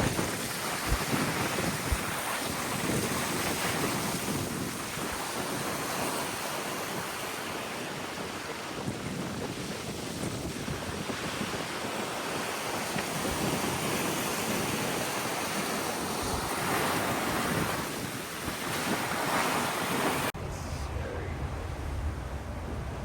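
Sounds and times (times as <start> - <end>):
sea water rushing: 0.0 - 23.0
waves breaking: 0.0 - 23.0
wind buffeting microphone: 0.0 - 23.0
low rumble: 20.4 - 23.0.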